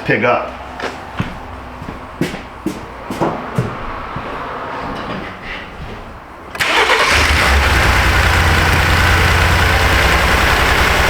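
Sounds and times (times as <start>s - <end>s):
truck engine starting and idling: 6.5s - 11.0s.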